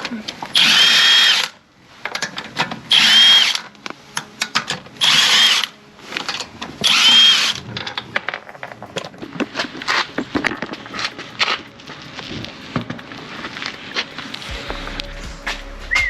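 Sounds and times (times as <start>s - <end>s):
impact wrench whining: 0.5s - 1.6s, 2.9s - 3.6s, 6.8s - 7.6s.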